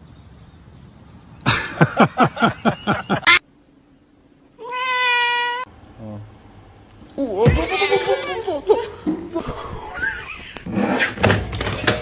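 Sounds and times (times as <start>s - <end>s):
cat meowing: 4.6s - 5.7s.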